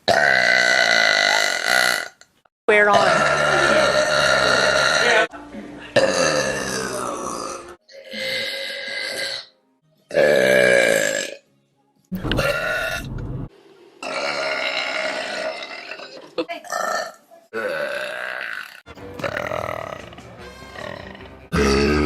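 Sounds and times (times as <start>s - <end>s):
women burping: 2.8s - 5.3s, 6.0s - 9.5s, 14.0s - 20.0s, 20.7s - 22.0s
music: 5.3s - 13.9s, 18.9s - 22.0s.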